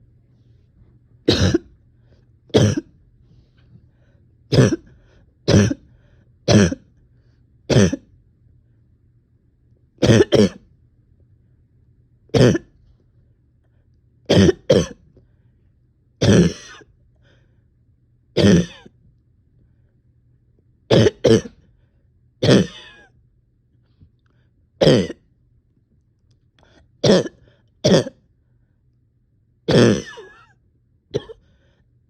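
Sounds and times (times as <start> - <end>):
person coughing: 1.3 - 1.8, 2.5 - 3.0, 4.5 - 4.9, 5.5 - 5.9, 6.5 - 6.9, 7.7 - 8.1, 10.0 - 10.6, 12.3 - 12.8, 14.3 - 15.0, 16.2 - 16.9, 18.4 - 18.9, 20.9 - 21.6, 22.4 - 23.1, 24.8 - 25.3, 27.0 - 28.2, 29.7 - 31.5.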